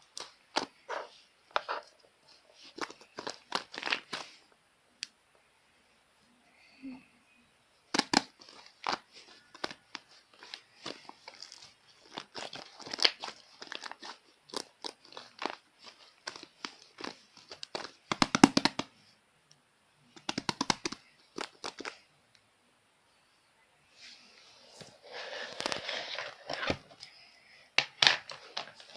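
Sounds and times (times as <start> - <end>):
slime crackling and popping: 7.9 - 18.9, 20.1 - 22.0.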